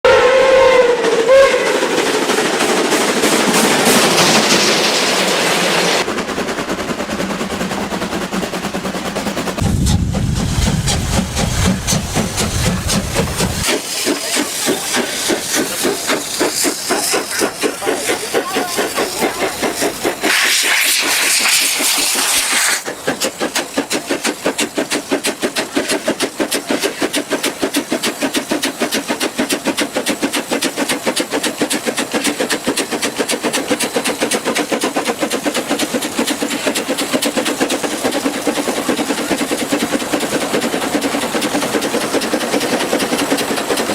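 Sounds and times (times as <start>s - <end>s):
steam engine chuffing: 0.1s - 43.9s
steam hissing: 0.2s - 43.9s.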